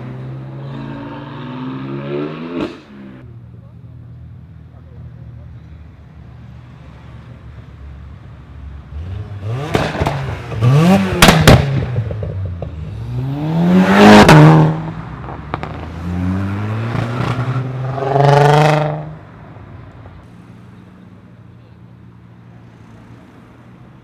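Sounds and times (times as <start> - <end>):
car engine idling and revving: 0.0 - 24.0
exhaust bangs: 9.0 - 21.0.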